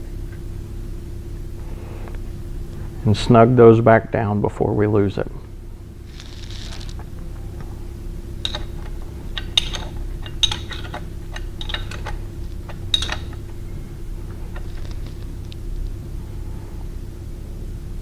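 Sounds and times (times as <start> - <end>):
steady low hum: 0.0 - 18.0
metal bolts and tools clinking: 8.4 - 13.4.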